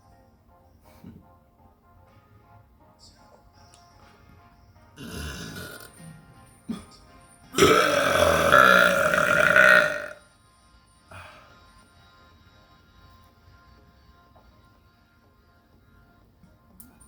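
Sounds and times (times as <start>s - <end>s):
person burping: 5.0s - 6.0s, 7.6s - 10.2s.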